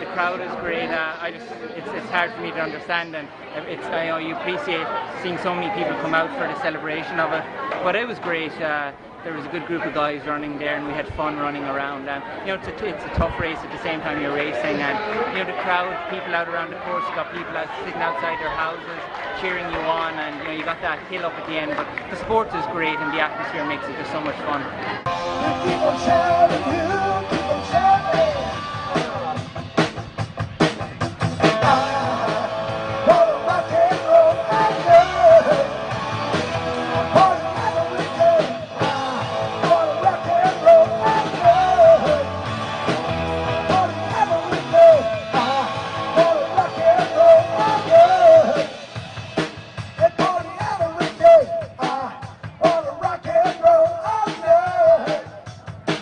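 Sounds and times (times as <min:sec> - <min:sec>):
rock song with singing: 0:25.0 - 0:56.0
drum kit: 0:25.1 - 0:56.0.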